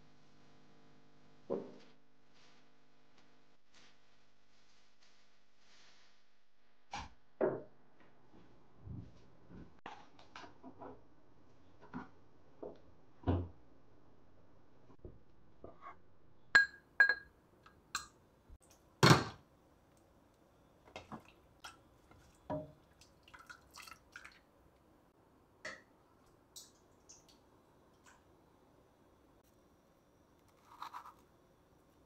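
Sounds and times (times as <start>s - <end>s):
crockery knocking and clinking: 16.6s - 17.3s.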